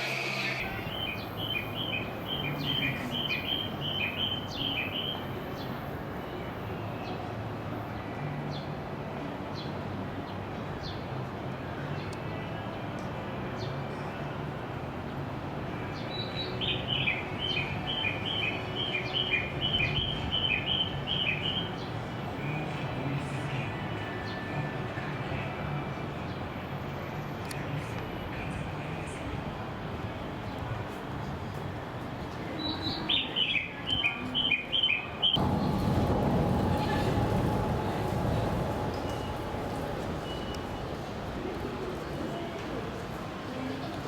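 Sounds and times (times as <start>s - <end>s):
low background hum: 35.4s - 41.8s.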